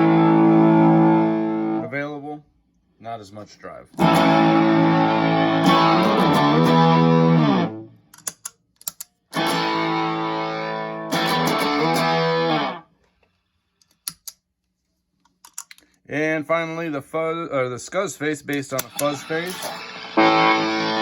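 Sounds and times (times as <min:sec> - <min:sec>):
fuzzed electric guitar chords: 0:00.0 - 0:01.9, 0:04.0 - 0:08.0, 0:09.4 - 0:12.8, 0:18.8 - 0:21.0
guitar string and pick clicks: 0:08.2 - 0:10.0.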